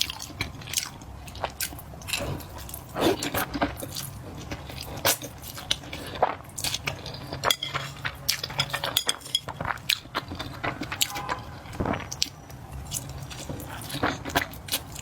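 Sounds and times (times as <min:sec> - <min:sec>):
utensils clinking against dish: 0:07.4 - 0:09.8.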